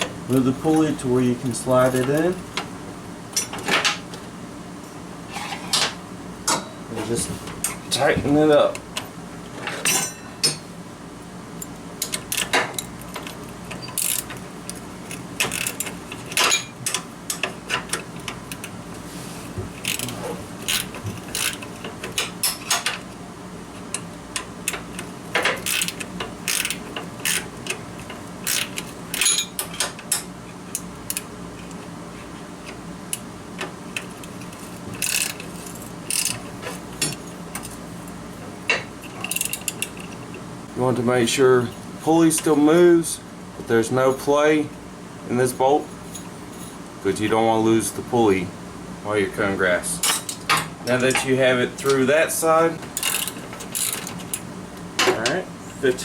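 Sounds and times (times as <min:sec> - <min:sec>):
ratchet wrench clicking: 0:19.8 - 0:20.1, 0:25.6 - 0:27.5, 0:28.4 - 0:29.4, 0:34.9 - 0:35.4.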